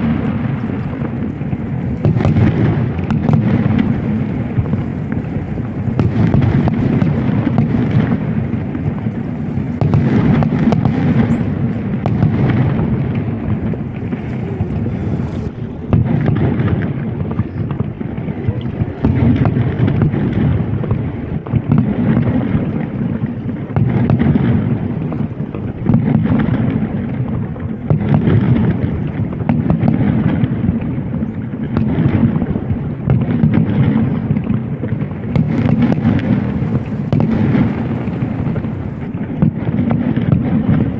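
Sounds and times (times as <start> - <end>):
fireworks booming and crackling: 0.0 - 40.9.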